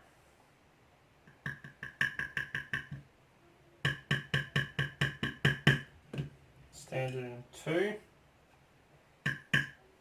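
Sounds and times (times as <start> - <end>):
quick metal taps: 9.2 - 9.8.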